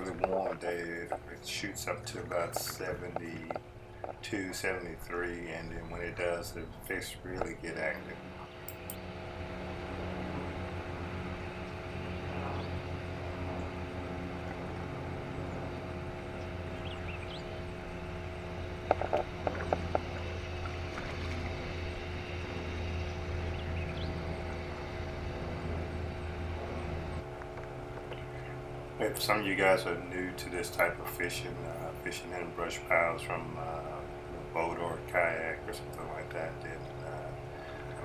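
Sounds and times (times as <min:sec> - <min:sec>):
motor humming: 0:00.0 - 0:38.0
sharp clicks: 0:08.6 - 0:09.0.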